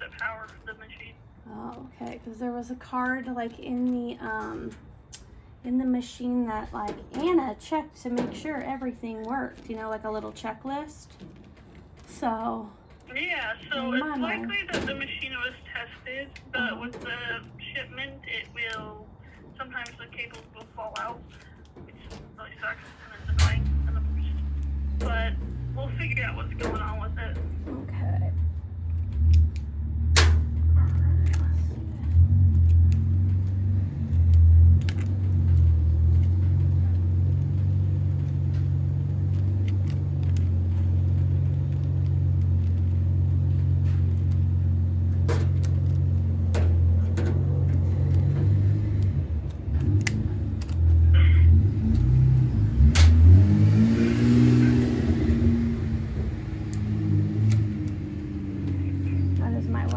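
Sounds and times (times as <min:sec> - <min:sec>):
sharp clicks: 0:02.9 - 0:05.4, 0:11.0 - 0:27.6, 0:28.3 - 0:51.1, 0:51.8 - 0:53.5, 0:54.4 - 0:59.9
car engine revving: 0:22.0 - 0:59.9
sharp click: 0:52.9 - 0:53.2.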